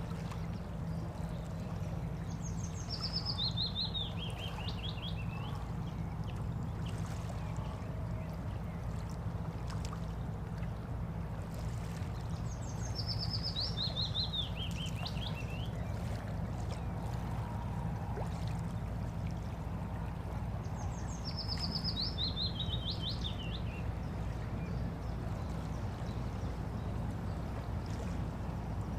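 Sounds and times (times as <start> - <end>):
moving water wash: 0.0 - 28.9
small songbird singing: 2.2 - 6.1, 12.4 - 16.0, 20.7 - 23.9.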